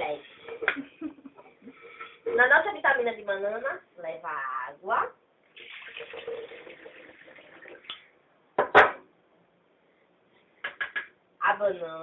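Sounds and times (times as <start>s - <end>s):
water pouring into blender jar: 5.6s - 7.9s.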